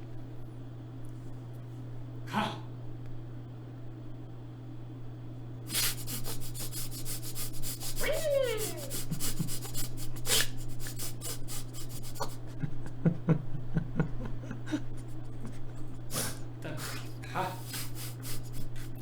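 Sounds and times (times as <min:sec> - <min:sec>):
rubbing and scratching: 0:05.7 - 0:12.4.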